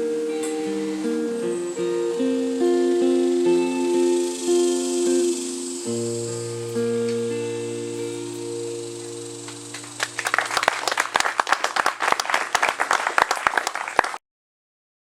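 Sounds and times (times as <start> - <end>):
acoustic guitar chord ringing: 0.0 - 11.4
audience applause: 9.7 - 14.2.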